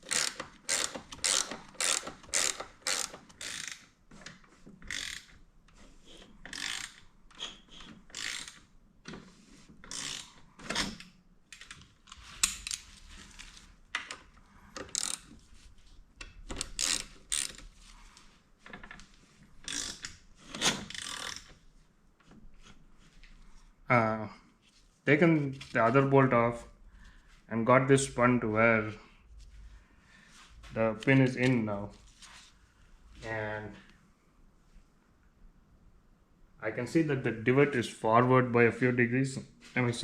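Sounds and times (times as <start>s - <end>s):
ratchet wrench clicking: 0.0s - 3.8s, 4.9s - 5.3s, 6.5s - 7.0s, 8.1s - 8.6s, 9.9s - 10.3s, 14.8s - 15.2s, 16.6s - 17.6s, 19.7s - 20.1s, 20.9s - 21.4s.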